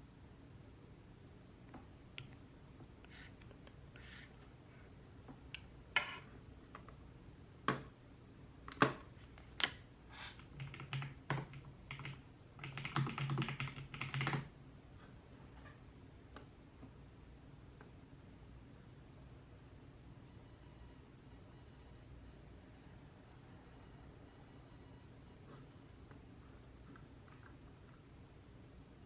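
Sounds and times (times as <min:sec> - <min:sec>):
typing on computer keyboard: 0:08.7 - 0:14.5.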